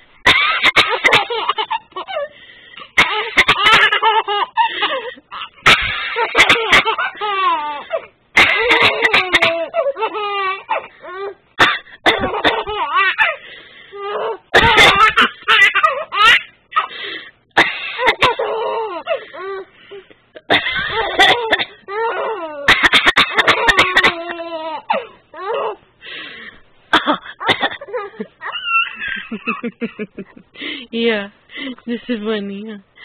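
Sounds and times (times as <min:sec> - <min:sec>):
woman fake-coughing: 0:00.2 - 0:01.4, 0:08.4 - 0:09.8, 0:11.6 - 0:12.7, 0:14.5 - 0:15.4, 0:20.4 - 0:21.8, 0:22.6 - 0:25.1, 0:26.9 - 0:28.0
baby giggling: 0:00.4 - 0:02.3, 0:03.1 - 0:10.9, 0:14.0 - 0:16.9, 0:27.4 - 0:30.4.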